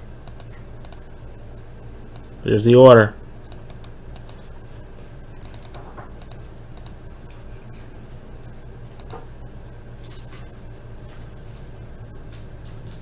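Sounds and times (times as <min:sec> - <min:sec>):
steady low hum: 0:00.0 - 0:13.0
keyboard keystrokes: 0:00.2 - 0:01.0, 0:03.5 - 0:04.4, 0:05.4 - 0:07.0, 0:09.0 - 0:09.3.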